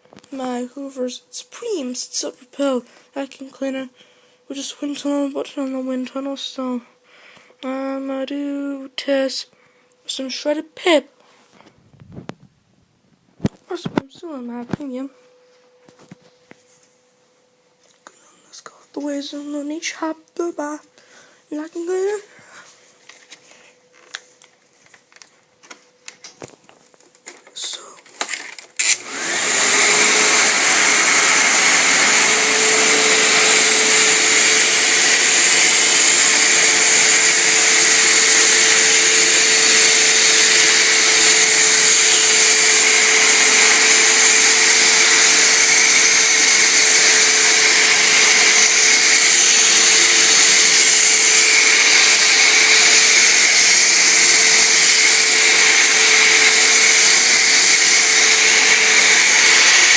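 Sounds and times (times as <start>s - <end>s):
vacuum cleaner motor running: 27.6s - 59.9s.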